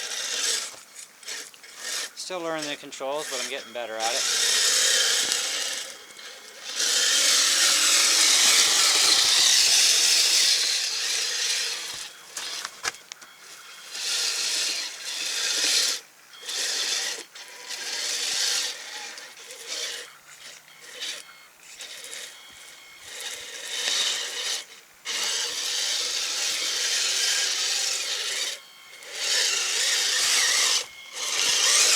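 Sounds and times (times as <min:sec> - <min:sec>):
toy snowcat tracks in snow: 0:00.0 - 0:31.9.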